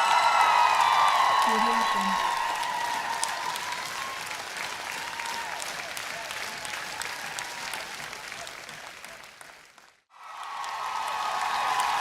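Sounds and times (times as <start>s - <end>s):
cheering voices: 0.0s - 9.5s, 10.1s - 12.0s
audience applauding: 0.0s - 12.0s.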